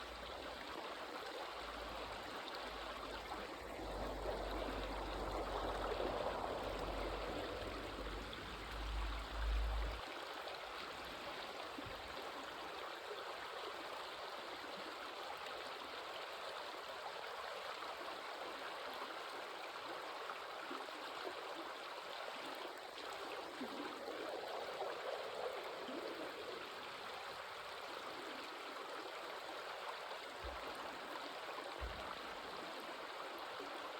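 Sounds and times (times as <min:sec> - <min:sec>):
stream water flowing: 0:00.0 - 0:33.9
low rumble: 0:03.5 - 0:10.0.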